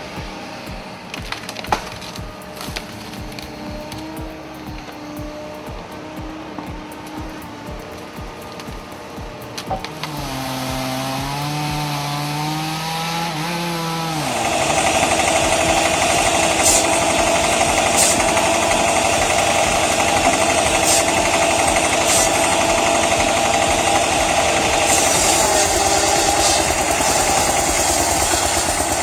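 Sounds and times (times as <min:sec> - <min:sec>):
engine saw cutting wood: 0:00.0 - 0:29.0
short hissing bursts: 0:14.2 - 0:29.0.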